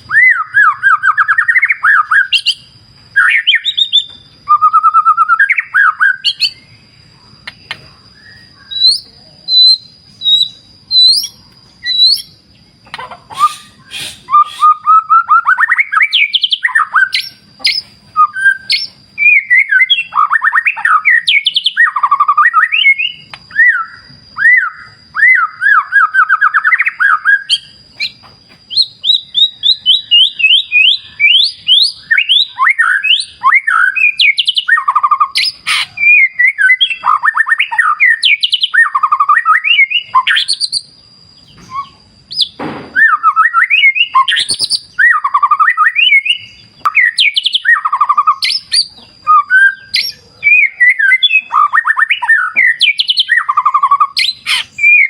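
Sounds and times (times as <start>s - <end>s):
bird singing whistled phrases: 0.0s - 6.8s, 8.1s - 12.5s, 13.3s - 55.0s
faint steady high tone: 0.0s - 12.8s.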